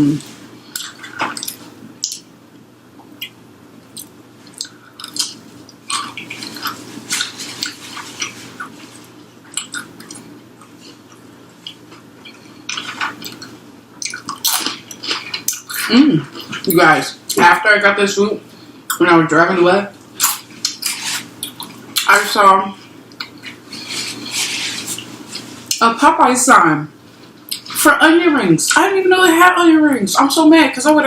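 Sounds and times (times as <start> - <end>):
person chewing wetly: 0.7 - 2.3, 3.0 - 16.8, 20.2 - 22.1, 23.1 - 25.8.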